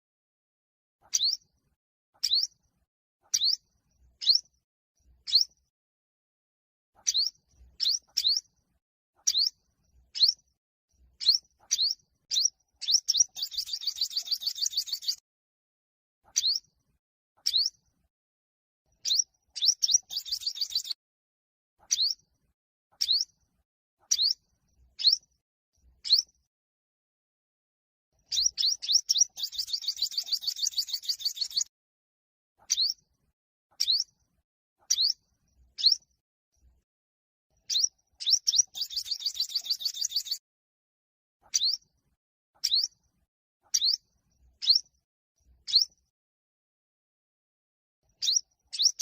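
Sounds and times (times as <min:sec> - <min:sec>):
bird trilling: 0:11.2 - 0:15.2, 0:28.3 - 0:31.7, 0:37.7 - 0:40.4, 0:45.7 - 0:45.9.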